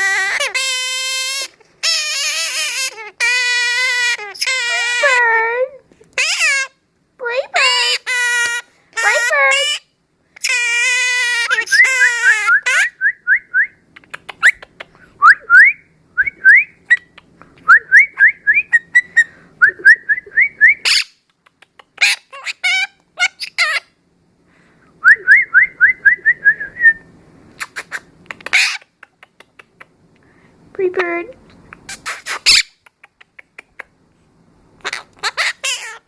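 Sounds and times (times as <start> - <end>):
bird whistling: 11.4 - 13.8
bird squawks: 34.8 - 36.0.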